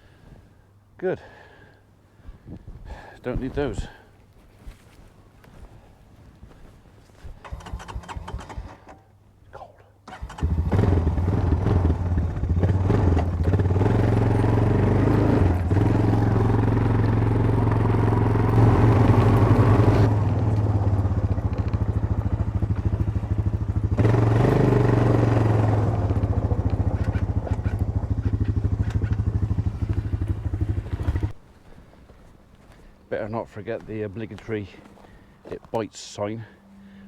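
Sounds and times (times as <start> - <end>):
engine running: 10.1 - 31.4.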